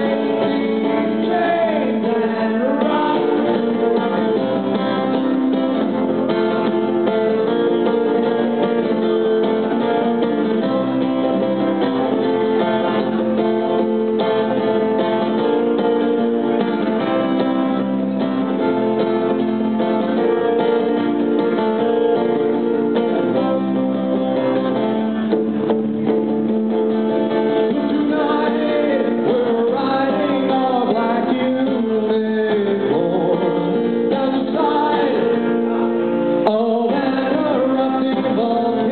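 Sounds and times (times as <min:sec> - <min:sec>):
person singing: 0:00.0 - 0:05.2, 0:27.4 - 0:38.9
acoustic guitar: 0:00.0 - 0:38.9.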